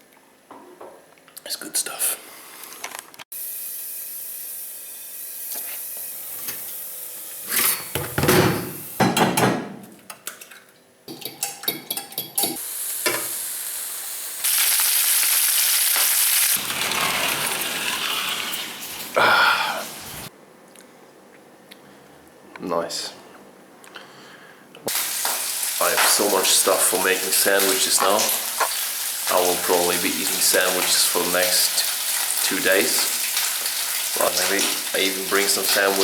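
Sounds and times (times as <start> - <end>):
food sizzling in a frying pan: 3.4 - 7.6, 12.6 - 20.3, 24.9 - 36.0.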